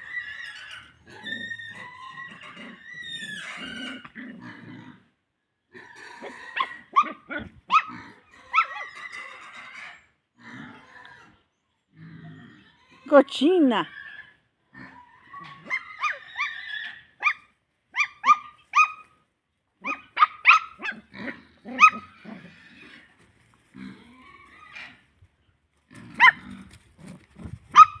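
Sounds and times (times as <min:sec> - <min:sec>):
puppy yipping and whining: 0:06.5 - 0:09.3, 0:15.3 - 0:19.2, 0:19.8 - 0:21.1, 0:21.7 - 0:22.2, 0:26.2 - 0:26.4, 0:27.7 - 0:28.0.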